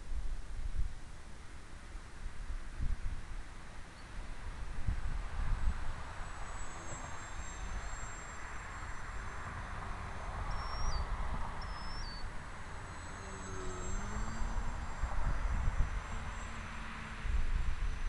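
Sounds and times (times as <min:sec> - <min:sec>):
wind rumbling on microphone: 0:00.0 - 0:18.0
model plane motor humming: 0:05.7 - 0:18.0.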